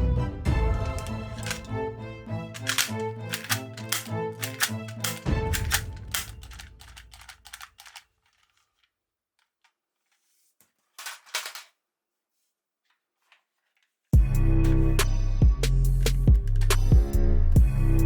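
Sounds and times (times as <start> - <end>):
background music: 0.0 - 7.3, 14.2 - 18.0
sharp mechanical clicks: 0.9 - 1.7, 2.6 - 8.0.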